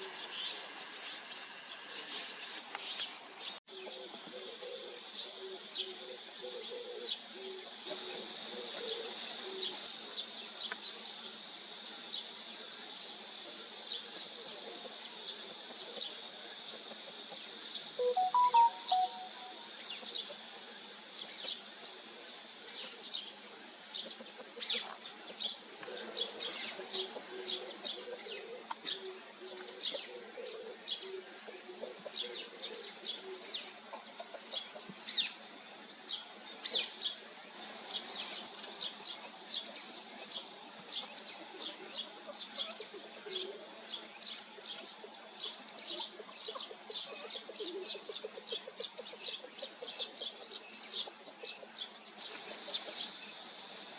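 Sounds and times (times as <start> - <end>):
insect hiss: 0.0 - 53.9
small birds chirping: 14.0 - 20.4
sharp down-slurred bird calls: 18.0 - 20.1.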